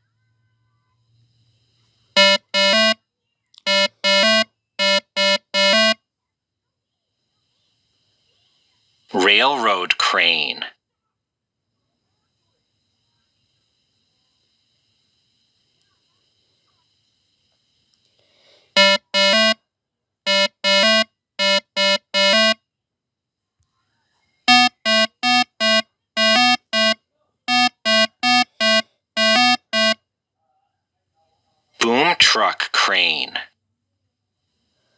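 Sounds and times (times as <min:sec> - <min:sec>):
horn short blasts: 0:24.5 - 0:30.0.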